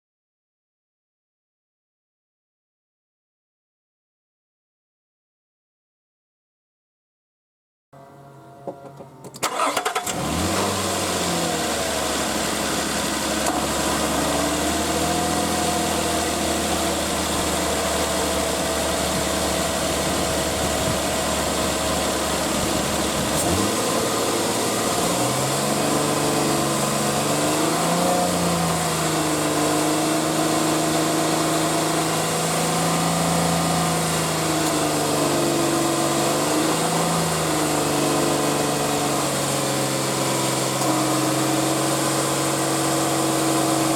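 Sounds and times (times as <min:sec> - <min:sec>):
car engine running: 0:08.0 - 0:43.9.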